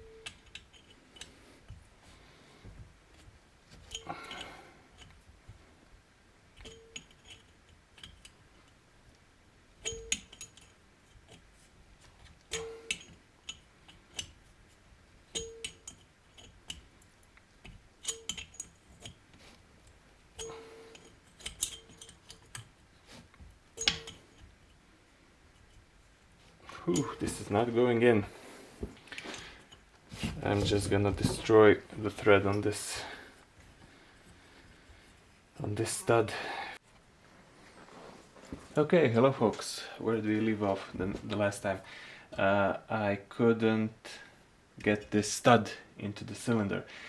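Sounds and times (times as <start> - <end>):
hand tool clinking on metal nuts: 6.6 - 8.3, 9.8 - 11.4, 12.5 - 14.4, 15.3 - 16.8, 17.6 - 19.2, 20.4 - 22.8, 23.8 - 24.5.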